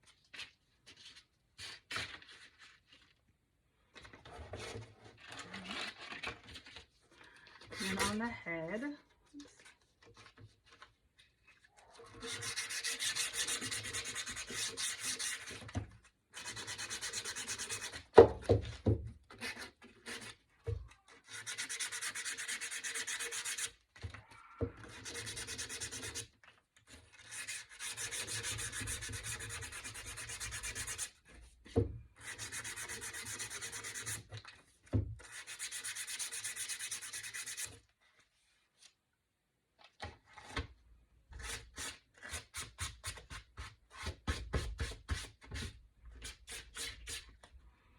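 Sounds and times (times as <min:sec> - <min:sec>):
sandpaper rubbing on wood: 0:12.2 - 0:15.5, 0:21.3 - 0:23.7, 0:25.0 - 0:26.3, 0:35.3 - 0:37.7.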